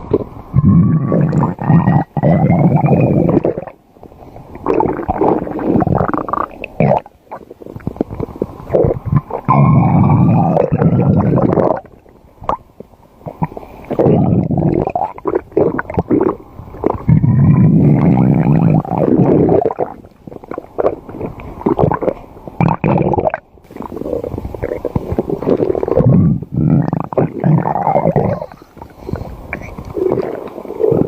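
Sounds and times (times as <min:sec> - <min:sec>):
stomach growling: 0:00.0 - 0:03.8, 0:04.4 - 0:31.0.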